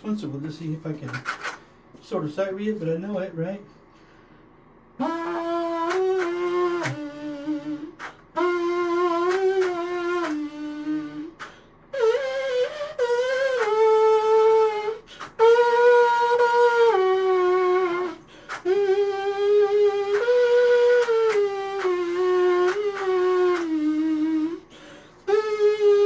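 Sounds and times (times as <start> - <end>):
trumpet playing slow melody: 5.0 - 24.7.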